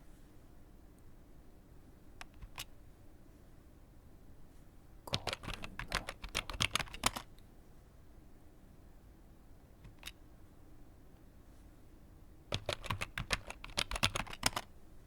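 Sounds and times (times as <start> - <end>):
computer keyboard typing: 2.2 - 2.7, 5.1 - 7.3, 9.8 - 10.2, 12.5 - 14.7.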